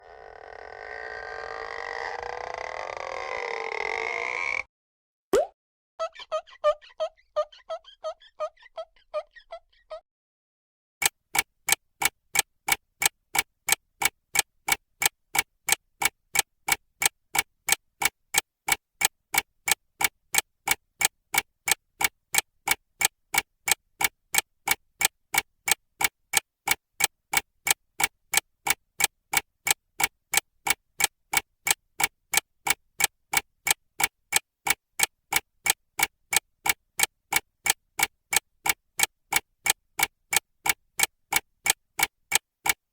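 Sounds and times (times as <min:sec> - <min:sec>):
clock ticking fast: 0:11.0 - 0:42.9.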